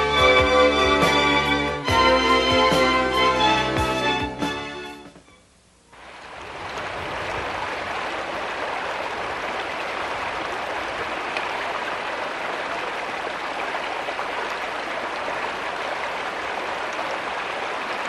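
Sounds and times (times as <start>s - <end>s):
stream water rushing: 6.0s - 18.0s.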